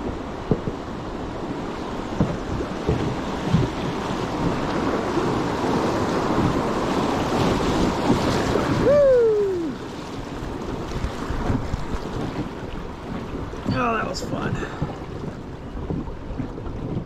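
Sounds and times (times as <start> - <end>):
water noise: 0.0 - 17.0
wind buffeting microphone: 0.0 - 17.0.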